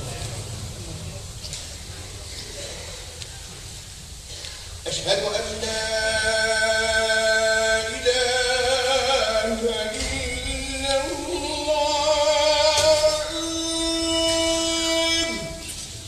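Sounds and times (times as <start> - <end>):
man chanting call to prayer: 4.8 - 15.9.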